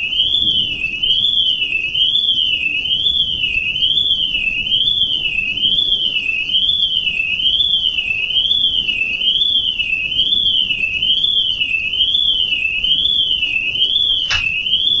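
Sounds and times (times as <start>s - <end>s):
warbling electronic alarm: 0.0s - 15.0s
short click: 14.3s - 14.5s.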